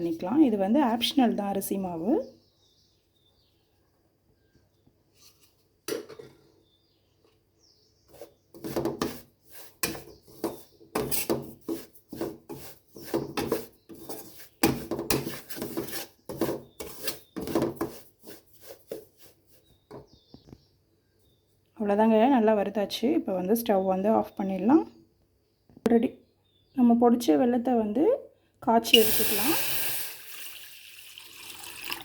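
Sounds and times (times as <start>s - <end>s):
spatula scraping in a pan: 8.1s - 19.7s.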